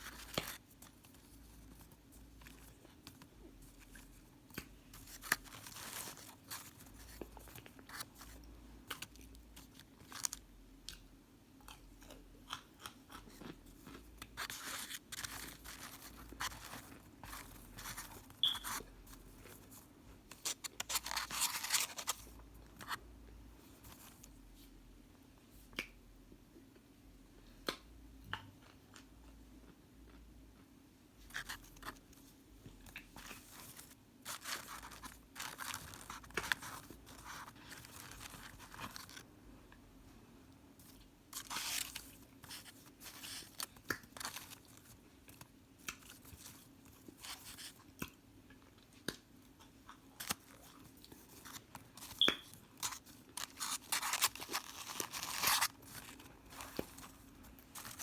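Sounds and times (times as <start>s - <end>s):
crunching and chewing: 0.0s - 23.0s, 40.8s - 58.0s.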